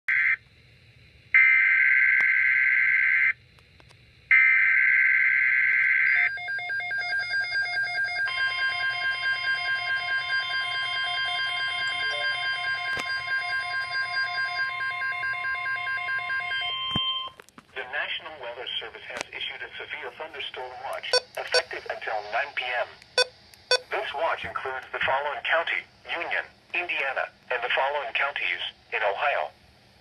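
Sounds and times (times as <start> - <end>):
pulsing beeping attention tone: 6.1 - 17.3, 23.2 - 23.9
shrill data bursts: 7.5 - 16.7, 23.2 - 23.9
steady higher tone: 8.3 - 16.9.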